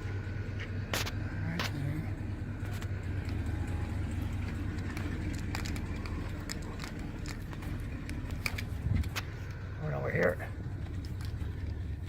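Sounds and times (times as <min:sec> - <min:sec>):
generator engine humming: 0:00.0 - 0:12.0
light clicks and ticks: 0:02.6 - 0:09.6, 0:10.6 - 0:12.0.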